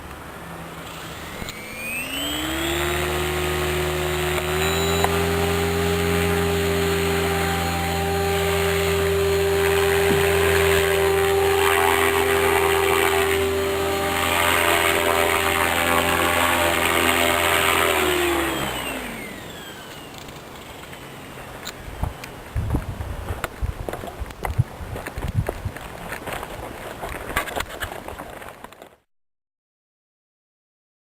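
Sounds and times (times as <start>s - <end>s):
rc helicopter motor whine: 0.3s - 23.0s.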